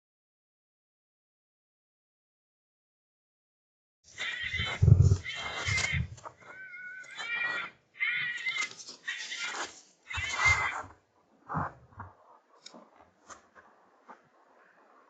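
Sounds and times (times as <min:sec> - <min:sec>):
fox screaming calls: 0:04.2 - 0:10.9.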